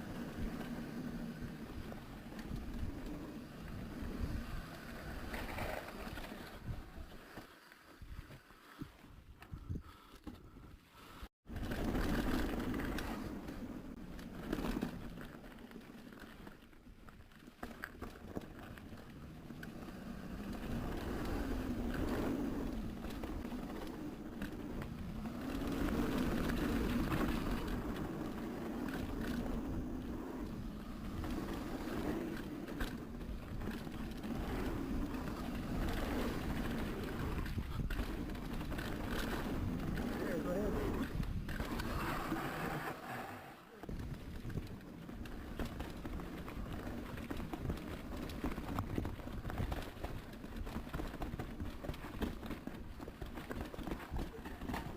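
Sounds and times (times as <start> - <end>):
bike tyres on dirt trail: 0.0 - 54.9
bike knocking and rattling: 11.5 - 42.5, 43.8 - 54.9.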